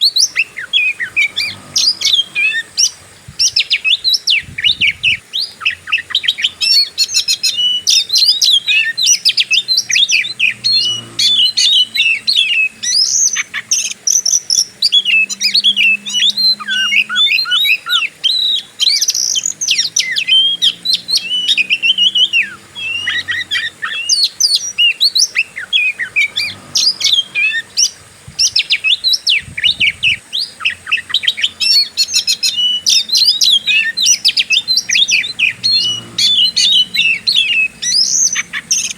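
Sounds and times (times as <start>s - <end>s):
bird singing chirps and whistles: 0.0s - 38.9s.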